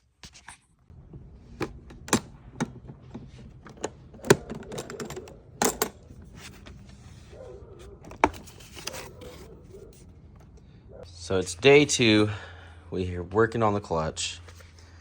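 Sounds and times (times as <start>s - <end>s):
sharp clicks and knocks: 1.1s - 6.1s.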